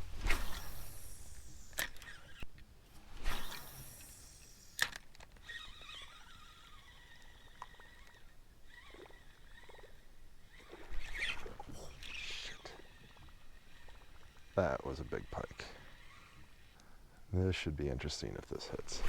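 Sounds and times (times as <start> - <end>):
rod and line swish: 0.0 - 16.8, 18.5 - 19.0
lure worked across water: 0.0 - 19.0
sharp click: 1.7 - 2.6.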